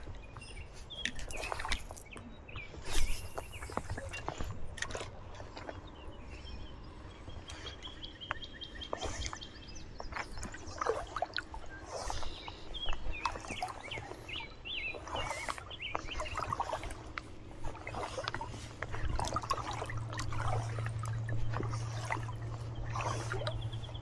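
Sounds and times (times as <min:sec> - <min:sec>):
small birds chirping: 0:00.2 - 0:04.2.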